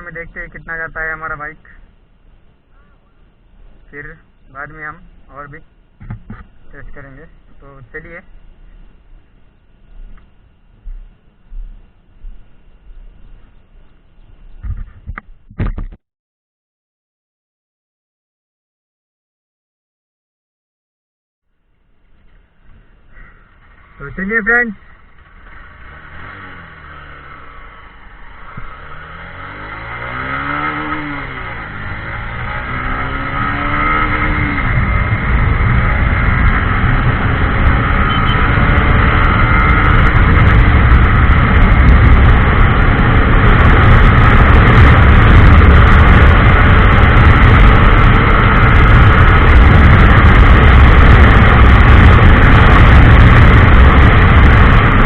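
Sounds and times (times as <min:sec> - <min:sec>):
wind and road noise: 0:00.0 - 0:16.0, 0:21.5 - 0:55.0
motorcycle engine accelerating: 0:21.7 - 0:55.0.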